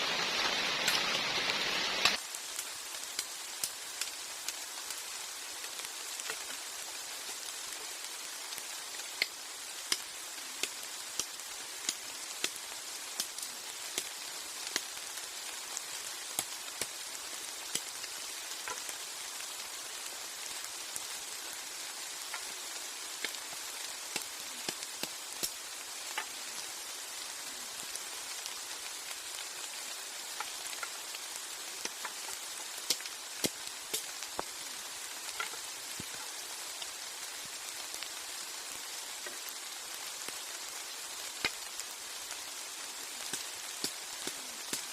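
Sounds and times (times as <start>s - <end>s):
heavy rain: 0.0s - 44.9s.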